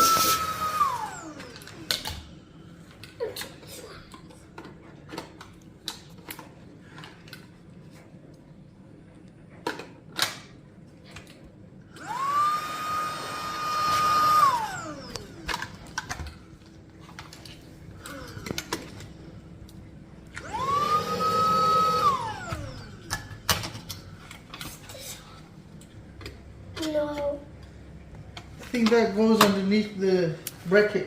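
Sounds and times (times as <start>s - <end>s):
handheld vacuum motor whine: 0.0s - 2.2s, 12.0s - 16.4s, 17.9s - 19.1s, 20.3s - 23.6s.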